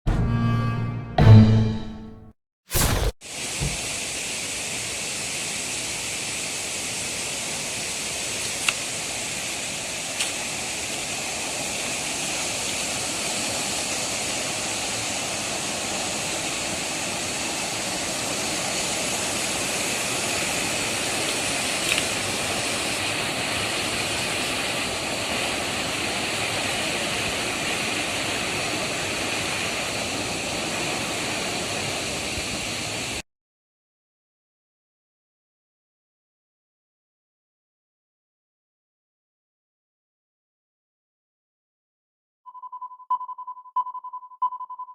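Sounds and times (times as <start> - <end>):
waterfall roaring: 2.8 - 33.2.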